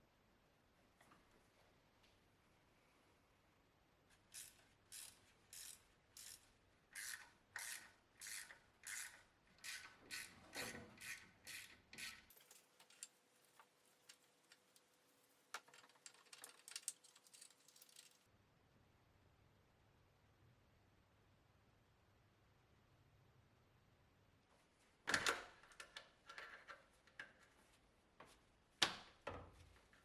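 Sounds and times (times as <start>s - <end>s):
light clicks and scrapes: 11.9s - 18.3s.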